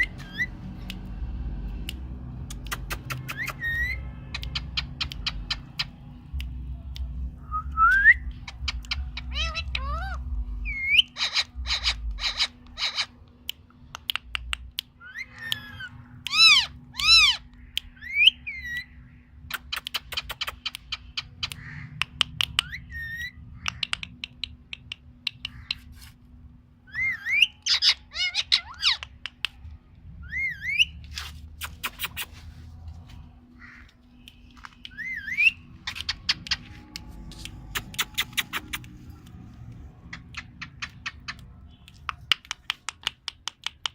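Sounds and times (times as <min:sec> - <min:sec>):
parakeet clicks: 0:00.2 - 0:07.3, 0:12.5 - 0:18.0, 0:19.4 - 0:22.8, 0:23.6 - 0:25.9, 0:28.6 - 0:29.8, 0:33.9 - 0:43.9
parakeet whistling: 0:34.9 - 0:36.5.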